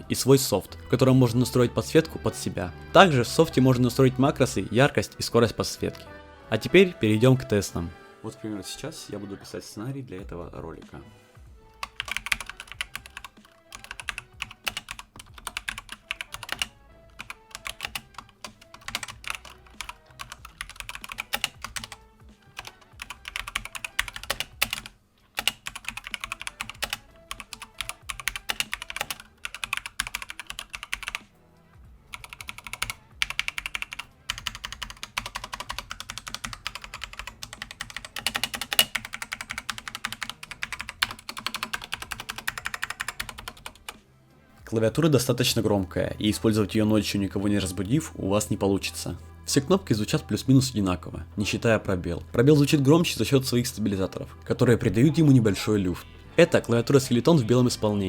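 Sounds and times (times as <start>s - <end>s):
keyboard typing clacks: 11.8s - 22.0s, 22.6s - 31.2s, 32.1s - 44.0s.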